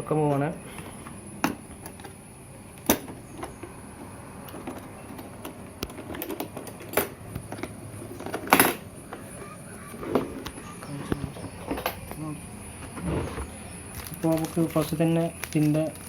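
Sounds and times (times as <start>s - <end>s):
box handling noise: 12.8s - 16.0s.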